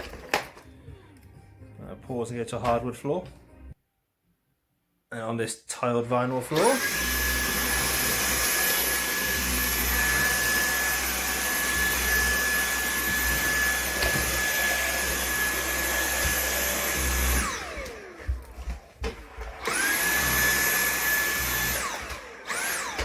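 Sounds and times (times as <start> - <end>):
vacuum cleaner running: 6.2 - 23.0.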